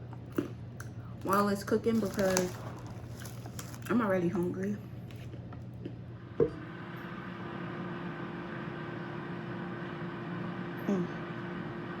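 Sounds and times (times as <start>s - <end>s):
appliance motor humming: 6.2s - 12.0s.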